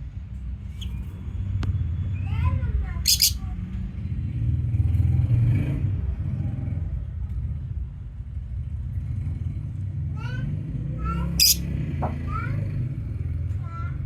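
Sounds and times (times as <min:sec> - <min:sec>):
lovebird chirps: 0:03.0 - 0:03.4, 0:11.4 - 0:11.6.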